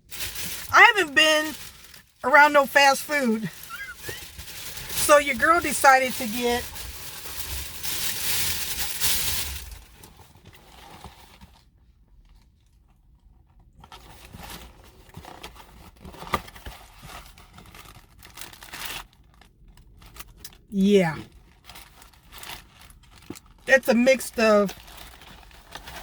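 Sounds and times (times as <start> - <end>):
paper packaging crinkling: 0.0 - 11.5, 14.0 - 20.6, 21.5 - 26.0.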